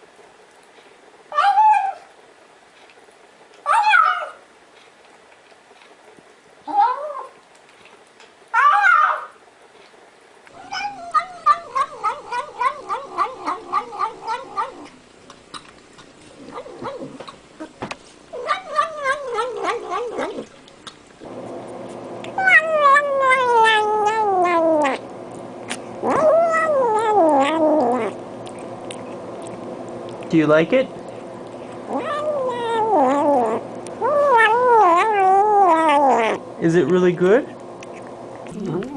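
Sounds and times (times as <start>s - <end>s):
cats mewing while eating: 1.3s - 2.2s, 6.6s - 9.4s, 10.5s - 36.6s, 37.6s - 38.9s
steady hum: 9.5s - 38.9s.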